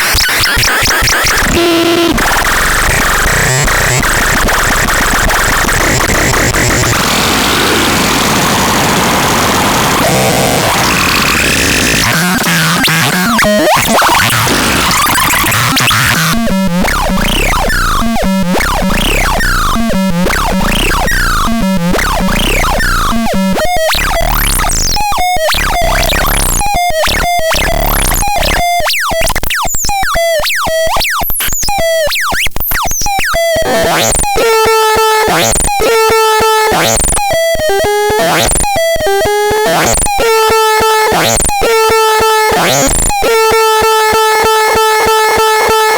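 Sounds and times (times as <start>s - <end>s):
short buzzy synthesizer notes: 33.4s - 45.9s.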